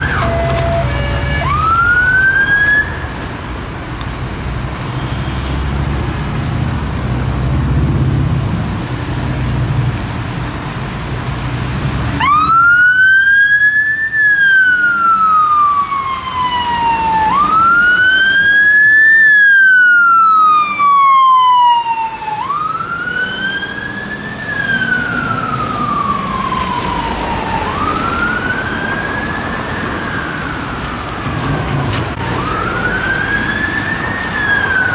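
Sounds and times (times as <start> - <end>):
fire engine siren wailing: 0.0 - 3.9, 12.0 - 34.9.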